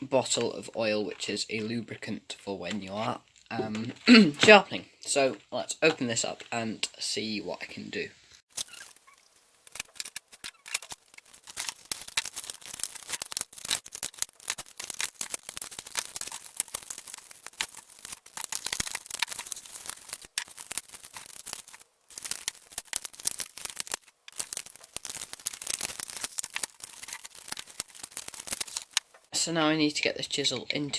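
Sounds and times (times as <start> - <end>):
packaging crinkling and tearing: 8.5 - 29.3.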